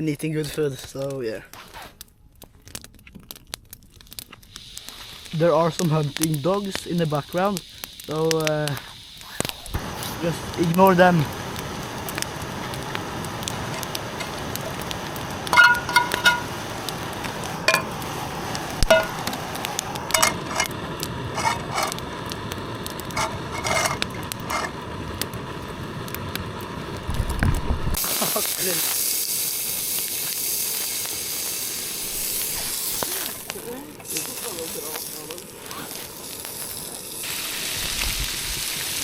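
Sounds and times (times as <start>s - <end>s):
bacon sizzling: 2.7s - 39.0s
sharp clicks and ringing clinks: 15.5s - 16.5s, 18.9s - 19.2s.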